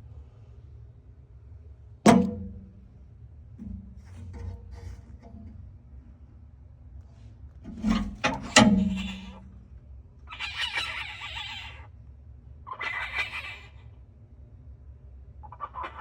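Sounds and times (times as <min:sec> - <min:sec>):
loud bang with ringing hum: 0:02.1 - 0:02.9
harsh animal calls: 0:08.2 - 0:09.6, 0:10.3 - 0:11.9, 0:12.7 - 0:14.0, 0:15.4 - 0:16.0.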